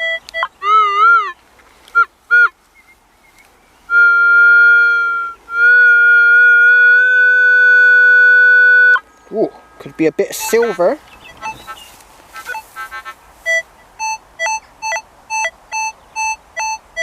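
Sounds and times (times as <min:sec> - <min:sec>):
metal detector warbling tone: 0:03.9 - 0:09.0
long steady high tone: 0:03.9 - 0:10.8
metal detector beeps: 0:10.3 - 0:11.8, 0:12.5 - 0:12.7.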